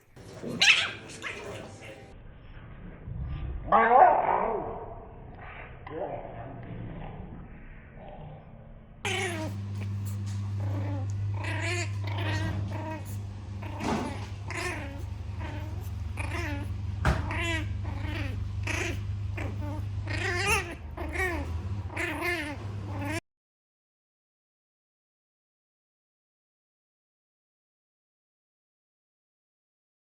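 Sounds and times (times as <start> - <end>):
puppy whimpering: 0.5 - 2.1, 9.1 - 23.2
low hum: 4.7 - 23.2.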